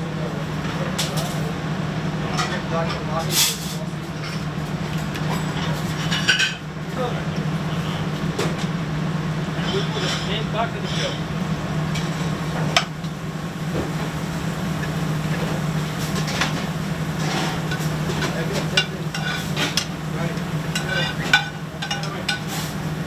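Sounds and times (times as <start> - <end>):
low kitchen hum: 0.0 - 23.0
food sizzling in a hot pan: 11.2 - 23.0
metal utensil clanking: 14.8 - 22.9.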